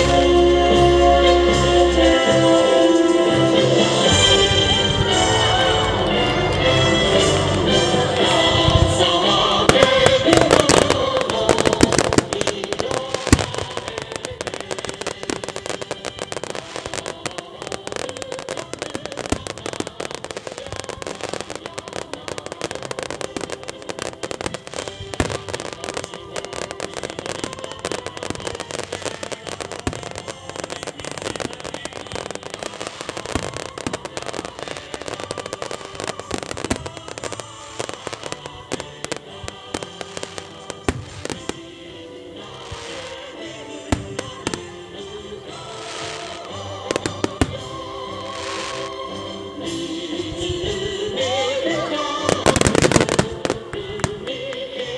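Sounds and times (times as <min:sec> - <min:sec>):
fireworks bangs and crackles: 0:00.0 - 0:54.9
music playing: 0:00.0 - 0:54.9.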